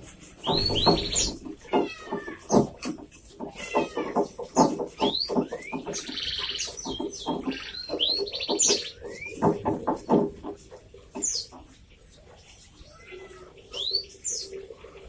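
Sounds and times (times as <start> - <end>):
canary singing: 0.2 - 2.8, 3.4 - 10.2.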